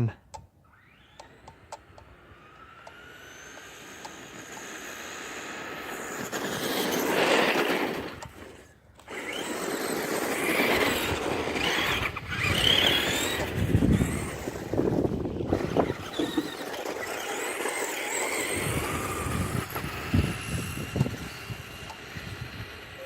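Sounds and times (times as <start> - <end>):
electric rc car motor whine: 0.6 - 23.0
tyre noise: 5.6 - 21.8.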